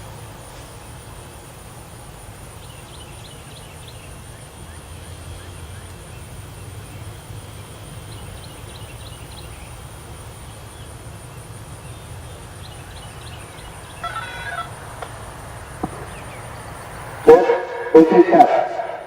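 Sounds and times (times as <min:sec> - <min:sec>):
low rumbling background noise: 0:00.0 - 0:19.0.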